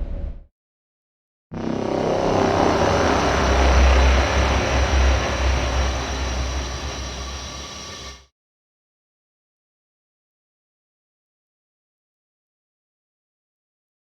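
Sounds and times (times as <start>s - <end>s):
deep heavy rumble: 1.6s - 8.2s
dense noisy texture: 1.6s - 8.2s.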